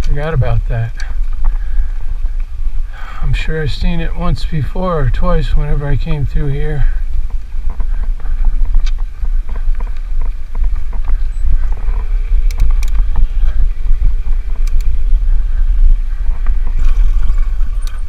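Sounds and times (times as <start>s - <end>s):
wind buffeting microphone: 0.0s - 18.0s
sharp clicks: 8.7s - 9.1s, 10.9s - 13.2s, 14.4s - 15.1s.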